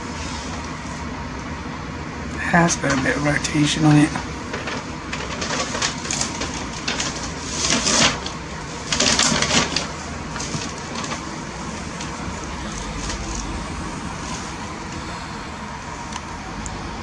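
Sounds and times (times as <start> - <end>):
traffic: 10.0 - 17.0.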